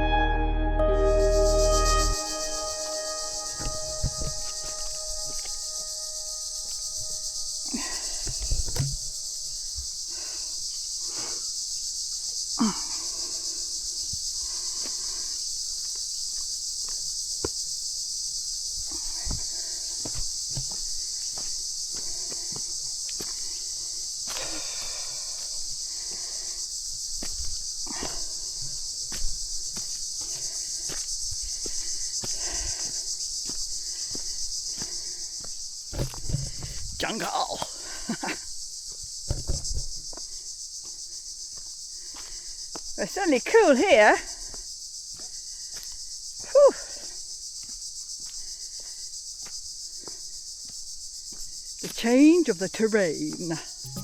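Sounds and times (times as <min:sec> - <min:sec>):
insects chorus: 0:00.8 - 0:54.0
footsteps crunching on track: 0:03.1 - 0:05.6.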